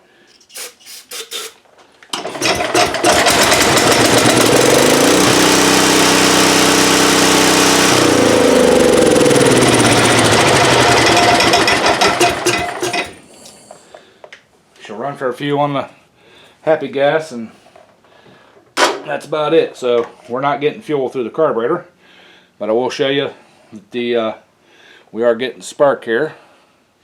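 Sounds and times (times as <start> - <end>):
small engine running and sputtering: 2.2 - 13.2.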